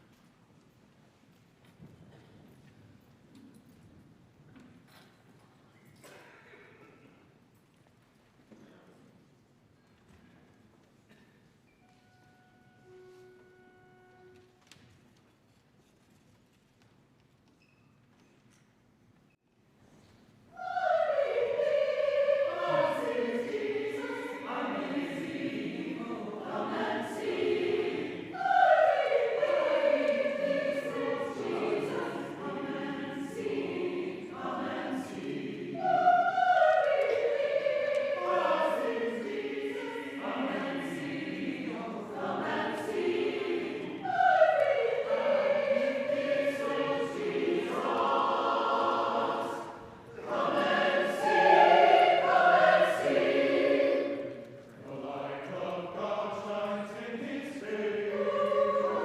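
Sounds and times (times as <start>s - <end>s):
choir singing slow song: 20.5s - 59.0s.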